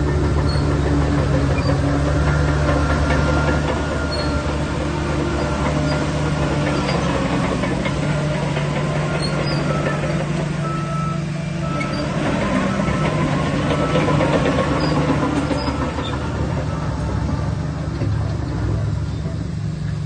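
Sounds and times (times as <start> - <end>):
bulldozer diesel engine droning: 0.0 - 20.0.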